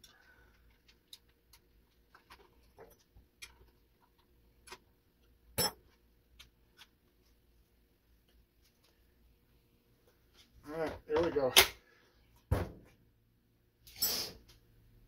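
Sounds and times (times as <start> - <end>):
small parts and tools clicking: 0.0 - 6.9.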